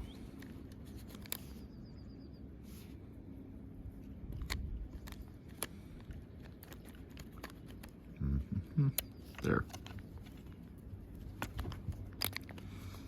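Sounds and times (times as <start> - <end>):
low background hum: 0.0 - 13.0
plastic parts clicking: 4.3 - 8.0, 11.4 - 12.7.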